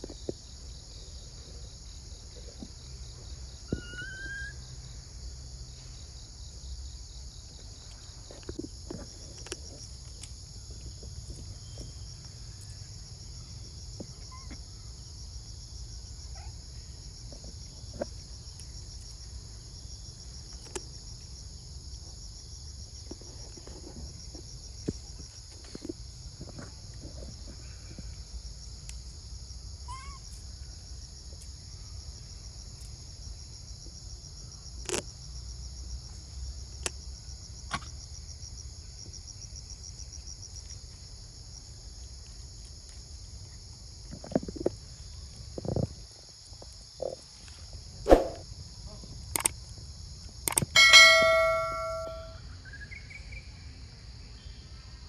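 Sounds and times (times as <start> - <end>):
insect chorus buzzing: 0.0 - 55.0
sharp clicks: 49.4 - 49.6, 50.5 - 52.1.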